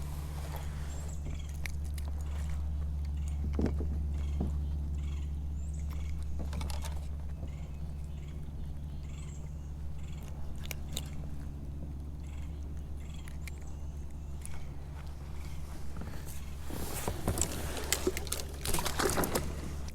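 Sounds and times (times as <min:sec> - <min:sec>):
steady low hum: 0:00.0 - 0:19.9.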